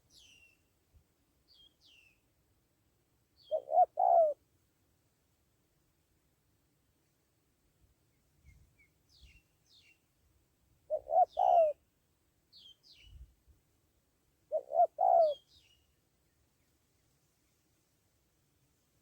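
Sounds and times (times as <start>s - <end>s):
small birds chirping: 0.0s - 0.7s, 1.5s - 2.2s, 3.4s - 4.4s, 8.1s - 10.1s, 10.9s - 11.8s, 12.5s - 13.4s, 14.5s - 17.6s
dove cooing: 3.5s - 4.4s, 10.9s - 11.8s, 14.5s - 15.4s.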